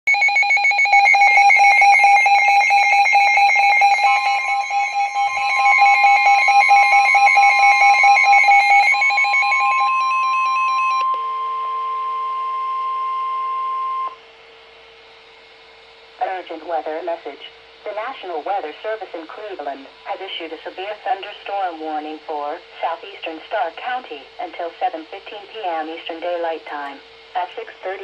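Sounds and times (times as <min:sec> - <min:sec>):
rapid electronic alarm beeping: 0:00.1 - 0:14.2
steady single-pitch alarm tone: 0:00.1 - 0:14.2.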